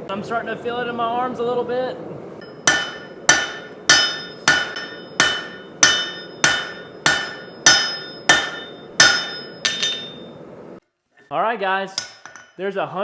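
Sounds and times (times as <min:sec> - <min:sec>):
hammer striking steel bar: 0:02.4 - 0:10.3, 0:12.0 - 0:12.5.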